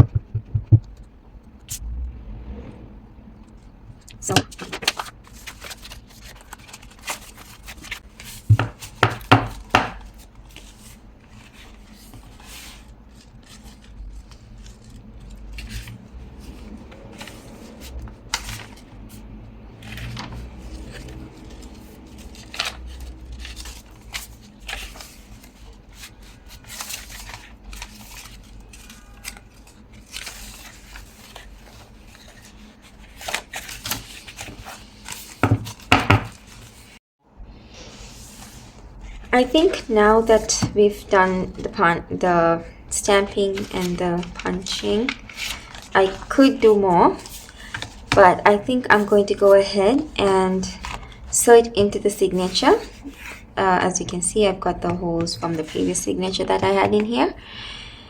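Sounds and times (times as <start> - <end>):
paper being handled: 4.3 - 37.0, 43.0 - 57.3.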